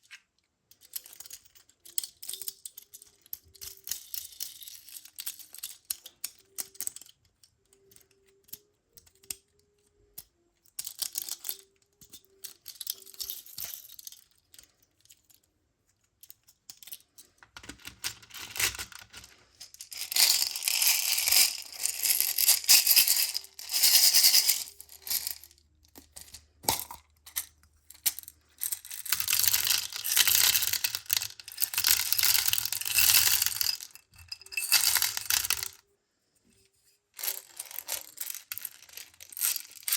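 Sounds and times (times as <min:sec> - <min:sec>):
beads rattling and clicking: 0:10.8 - 0:15.4, 0:16.3 - 0:35.8, 0:37.2 - 0:39.9.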